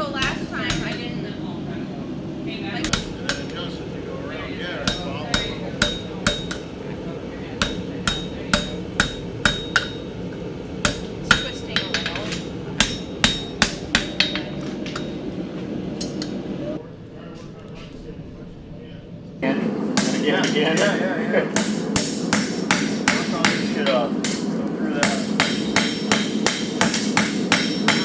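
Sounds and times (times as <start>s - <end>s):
hammer striking metal on anvil: 0.0s - 1.6s, 2.8s - 16.7s, 21.6s - 28.0s.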